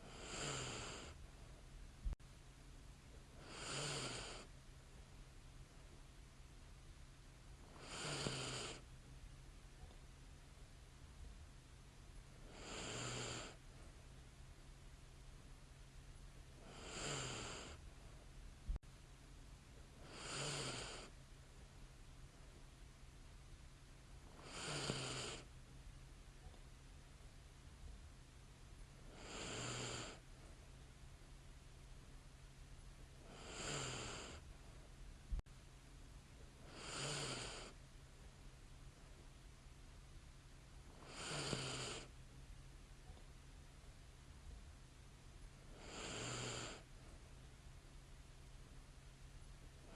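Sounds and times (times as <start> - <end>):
woman breathing with light snores: 0.0 - 1.7, 3.3 - 4.5, 7.7 - 8.9, 12.4 - 14.0, 16.6 - 18.3, 20.0 - 21.2, 24.3 - 25.5, 29.0 - 30.7, 33.2 - 34.9, 36.6 - 37.8, 40.9 - 42.2, 45.6 - 47.3.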